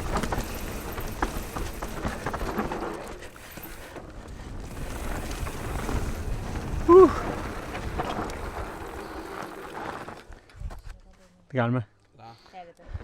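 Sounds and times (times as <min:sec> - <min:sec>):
bike tyres on loose dirt: 0:00.0 - 0:11.3
wind rumbling on microphone: 0:04.3 - 0:09.2.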